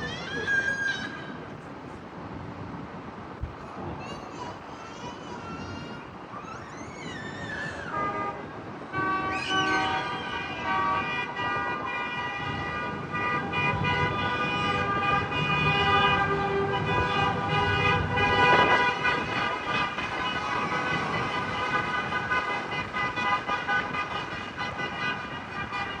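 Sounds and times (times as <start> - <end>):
vehicle horns honking: 7.9 - 26.0.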